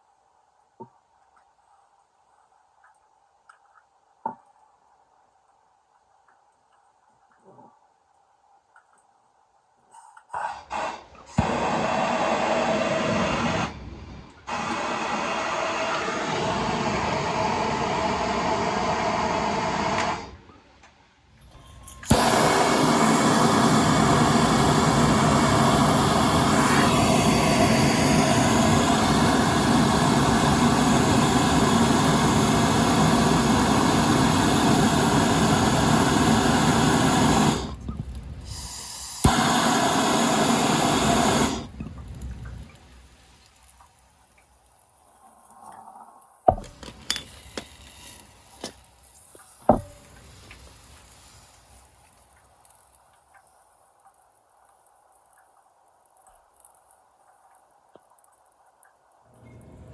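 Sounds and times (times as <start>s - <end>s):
torch flame rushing hiss: 10.4s - 20.4s, 21.5s - 44.1s, 46.5s - 52.9s
torch igniter click: 21.4s - 42.8s.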